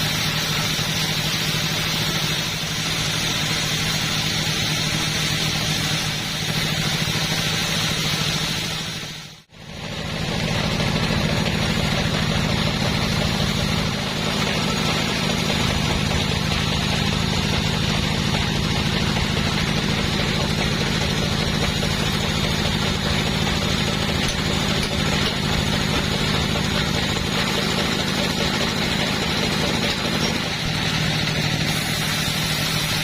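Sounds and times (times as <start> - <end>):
two-stroke chainsaw running: 9.5 - 33.0.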